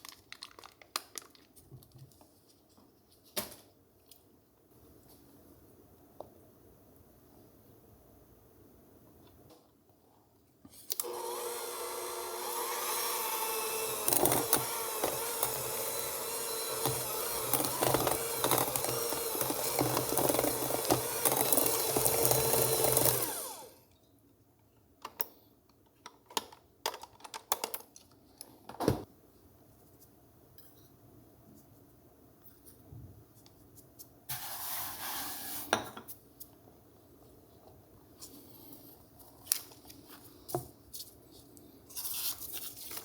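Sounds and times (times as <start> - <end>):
electric mixer running: 11.0 - 23.8.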